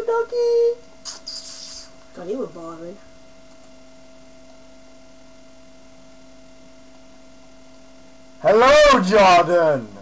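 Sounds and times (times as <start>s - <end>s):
electrical hum: 0.0s - 10.0s
faint hiss: 1.0s - 2.0s.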